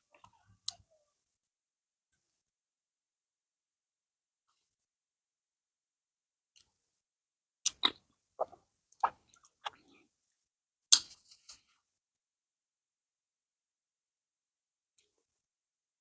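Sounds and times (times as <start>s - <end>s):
wet chewing mouth clicks: 7.7s - 10.0s.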